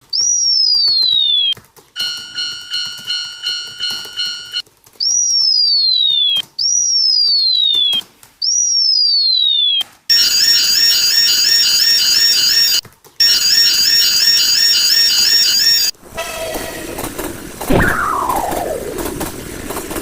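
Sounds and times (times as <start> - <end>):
warbling multi-tone alarm: 0.9 - 4.6, 8.6 - 16.0, 17.7 - 18.9
crossing bell ringing: 2.0 - 4.6, 10.1 - 16.8
falling electronic tone sweep: 17.7 - 19.4.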